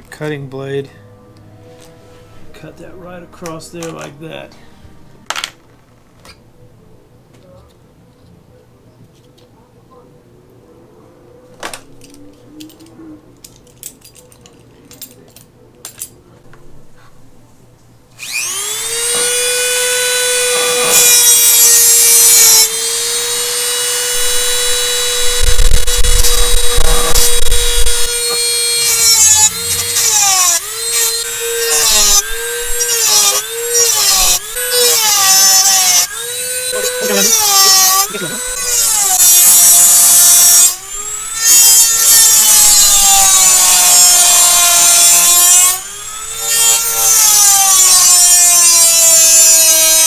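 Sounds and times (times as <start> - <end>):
rotary tool high whine: 18.2 - 50.0.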